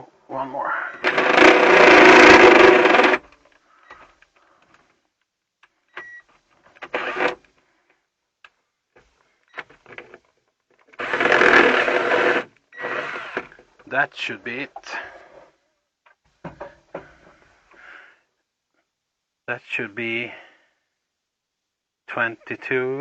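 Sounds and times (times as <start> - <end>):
drill cutting into metal panel: 1.0 - 3.2, 6.9 - 7.4, 11.0 - 13.5
small clicks and handling noises: 3.2 - 11.0.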